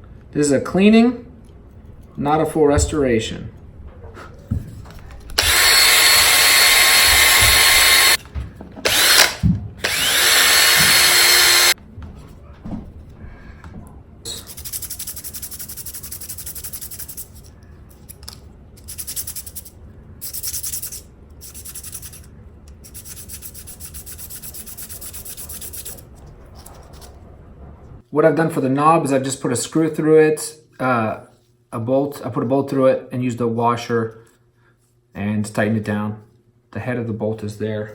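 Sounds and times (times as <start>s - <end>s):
cordless drill whining: 5.4s - 8.2s, 8.8s - 11.8s
sandpaper rubbing: 14.3s - 27.1s.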